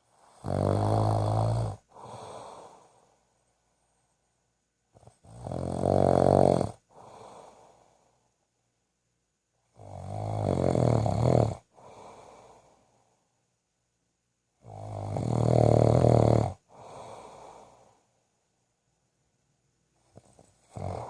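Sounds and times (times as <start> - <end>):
rattling snores: 0.2 - 2.2, 5.0 - 6.8, 9.8 - 11.7, 14.6 - 16.6, 20.2 - 21.0
soft breath: 1.8 - 4.5, 6.8 - 8.5, 11.6 - 13.5, 16.6 - 18.4, 19.9 - 21.0.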